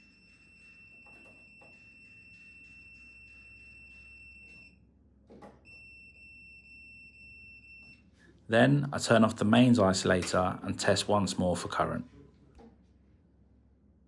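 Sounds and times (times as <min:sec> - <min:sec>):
voltage tester beeping: 0:00.0 - 0:04.8, 0:05.6 - 0:08.0.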